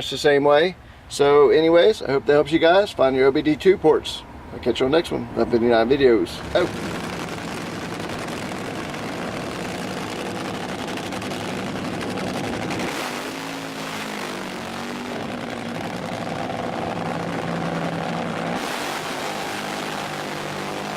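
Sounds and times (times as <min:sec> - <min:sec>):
wind or road noise: 0:00.0 - 0:20.9
vehicle engine running: 0:06.3 - 0:20.9.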